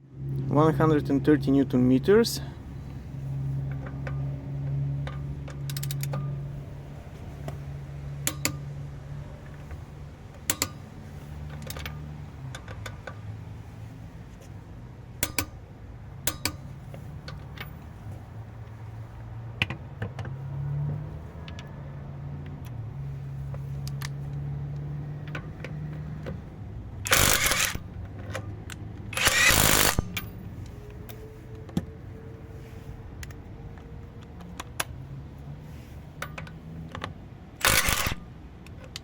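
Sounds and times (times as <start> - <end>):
hand tools clicking and knocking: 5.0 - 6.4, 8.2 - 8.6, 10.4 - 13.2, 15.2 - 15.6, 16.2 - 17.7.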